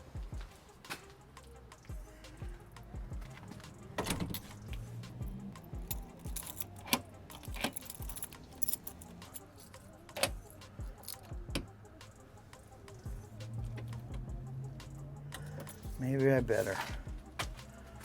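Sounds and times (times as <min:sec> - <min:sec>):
metallic clicks of lock hardware: 0:05.8 - 0:09.4, 0:10.1 - 0:11.7.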